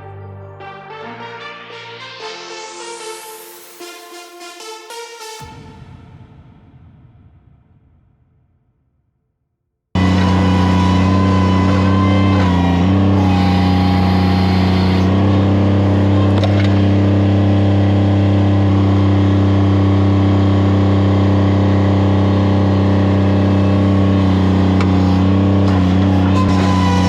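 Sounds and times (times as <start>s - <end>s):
engine running steadily: 10.0s - 27.0s.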